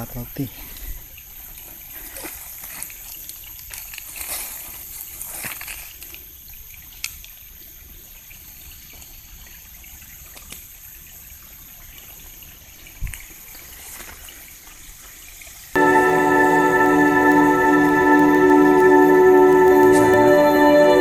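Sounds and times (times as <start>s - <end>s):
water trickling and lapping: 8.2s - 15.7s.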